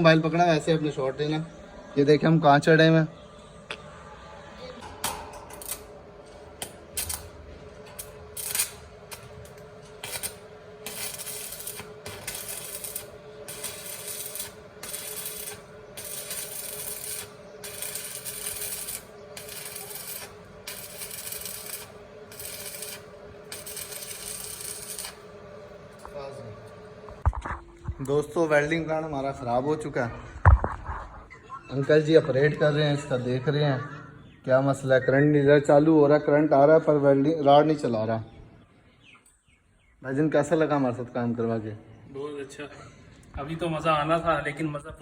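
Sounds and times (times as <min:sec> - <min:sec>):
welding arc crackling and hissing: 0:05.4 - 0:27.3.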